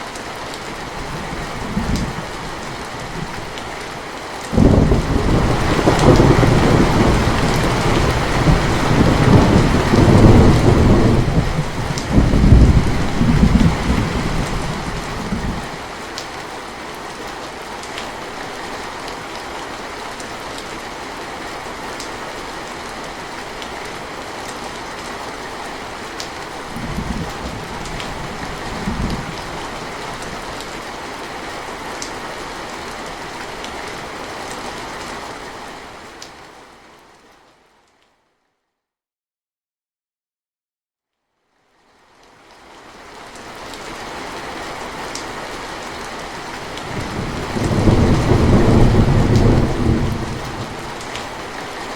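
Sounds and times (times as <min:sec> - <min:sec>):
steady rain: 0:00.0 - 0:38.3, 0:41.4 - 0:51.9
rolling thunder: 0:04.5 - 0:15.7, 0:46.9 - 0:51.0.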